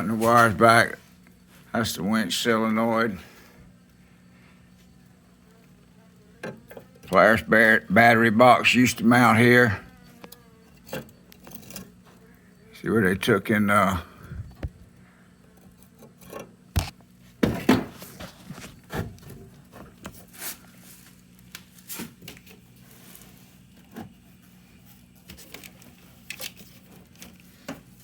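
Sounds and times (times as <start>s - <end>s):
faint low hum: 0.0s - 28.0s
handling knocks and rubbing: 15.9s - 28.0s.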